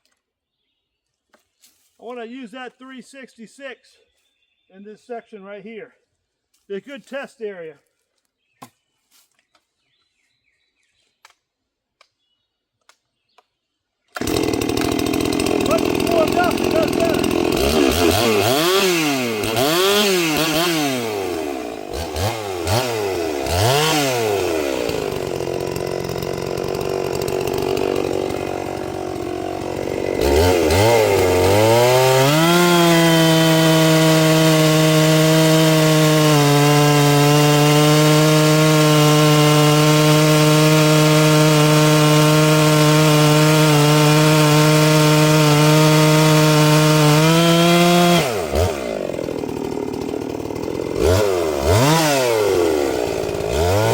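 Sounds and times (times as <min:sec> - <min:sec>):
chainsaw cutting wood: 0:14.1 - 0:53.9.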